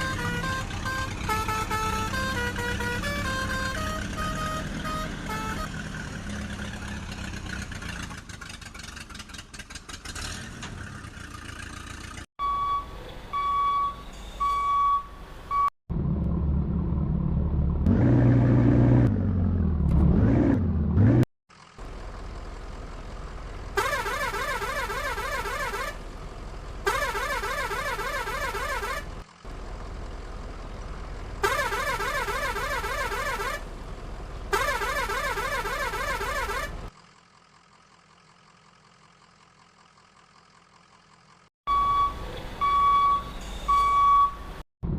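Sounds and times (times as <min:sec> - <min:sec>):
vehicle rumbling: 0:00.0 - 0:44.9
engine revving: 0:15.9 - 0:36.9.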